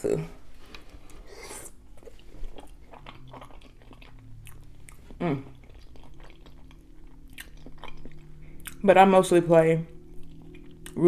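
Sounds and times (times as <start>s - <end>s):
wet chewing mouth sounds: 0.7s - 8.8s, 9.9s - 11.0s
person humming mm: 5.2s - 5.6s.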